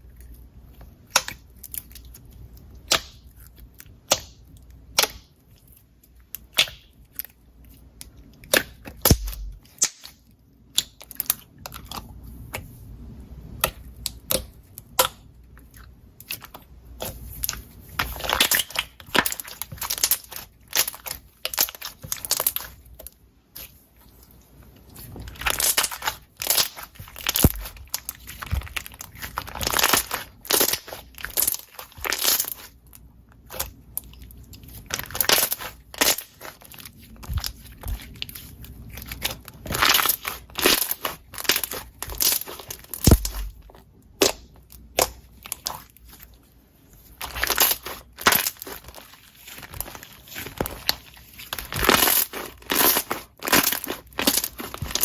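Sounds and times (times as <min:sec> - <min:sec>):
slime popping and clicking: 0:08.5 - 0:10.9, 0:42.9 - 0:43.5.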